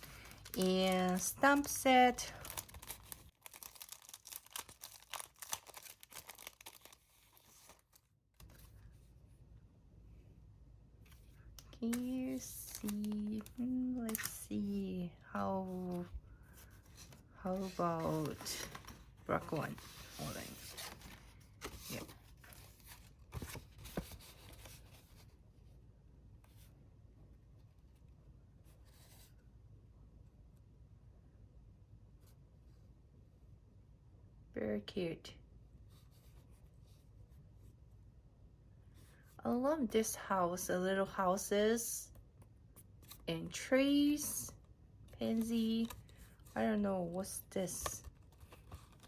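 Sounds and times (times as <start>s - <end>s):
packaging crinkling and rustling: 0.0s - 8.7s
paper rustling: 15.9s - 25.3s.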